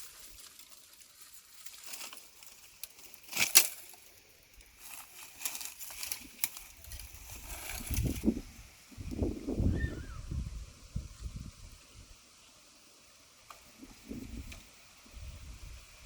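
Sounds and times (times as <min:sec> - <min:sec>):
sharp crackle: 0:00.0 - 0:09.2
rustling and crinkling: 0:00.0 - 0:09.4.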